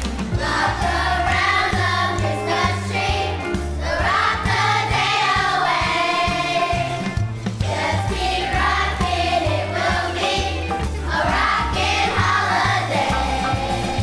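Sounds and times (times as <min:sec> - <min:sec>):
instrumental backing track: 0:00.0 - 0:14.0
children's choir singing: 0:00.4 - 0:14.0.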